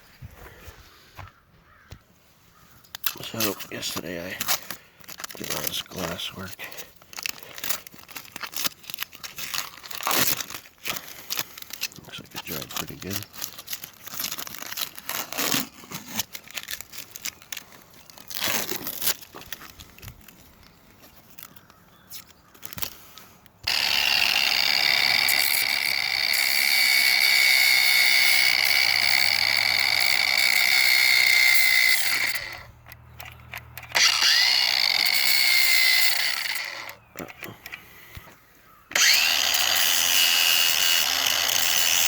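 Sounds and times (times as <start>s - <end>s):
power grinder whining: 23.6s - 37.8s, 38.9s - 42.0s
handling knocks and clicks: 32.8s - 34.0s.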